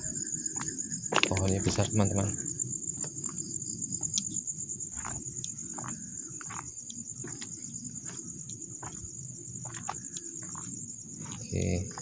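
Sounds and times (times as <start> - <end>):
crickets trilling: 0.0 - 12.0.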